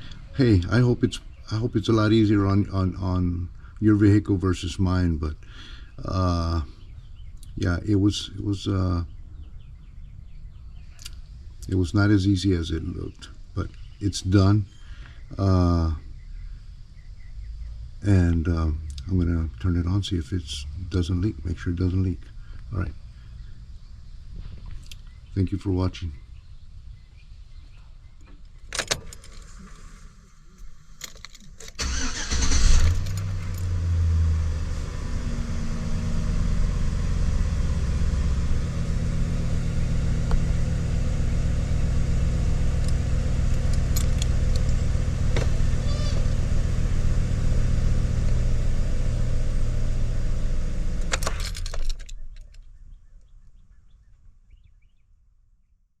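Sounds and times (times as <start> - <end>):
engine cranking and starting: 28.7 - 52.7
engine idling: 28.8 - 52.1.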